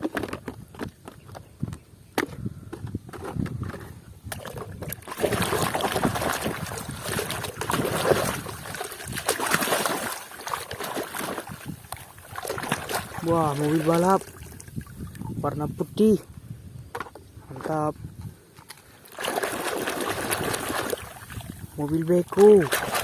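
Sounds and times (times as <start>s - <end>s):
plastic knocks and clicks: 0.0s - 3.9s
water splashing and sloshing: 3.1s - 15.5s, 18.6s - 23.0s.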